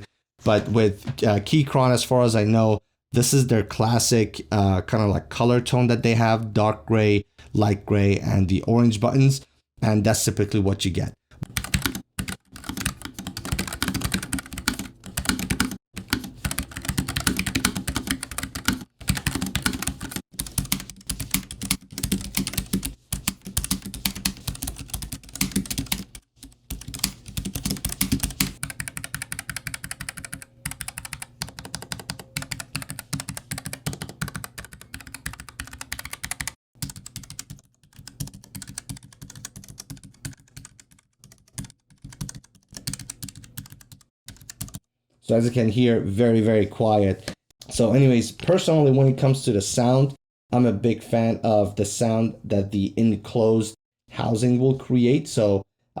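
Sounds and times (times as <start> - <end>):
mechanical keyboard typing: 11.4 - 44.8.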